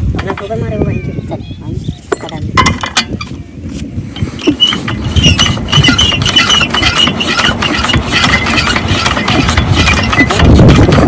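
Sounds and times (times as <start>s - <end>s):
high squeal: 4.4s - 10.4s
diesel engine knocking: 5.5s - 11.0s.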